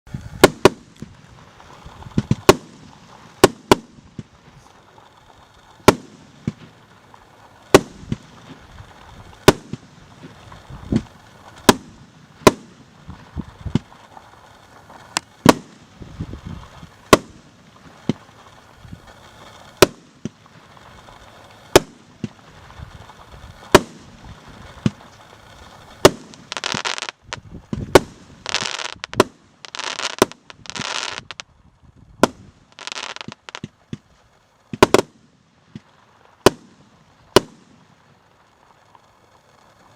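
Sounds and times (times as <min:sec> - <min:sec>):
firework crackling: 0:00.1 - 0:39.9
firework cake bangs: 0:00.3 - 0:01.1, 0:09.4 - 0:13.9, 0:15.2 - 0:15.8, 0:17.1 - 0:18.2, 0:23.6 - 0:25.1, 0:35.8 - 0:37.8.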